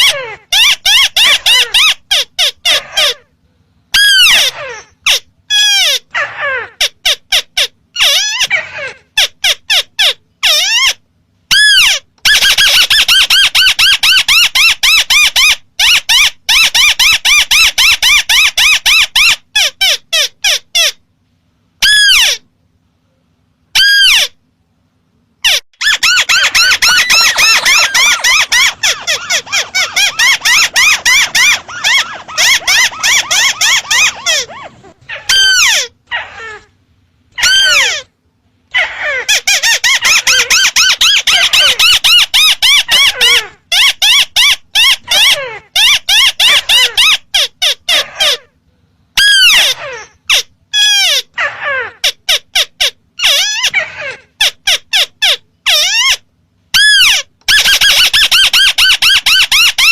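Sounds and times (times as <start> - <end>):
crake lure call whistles: 25.8 - 34.5.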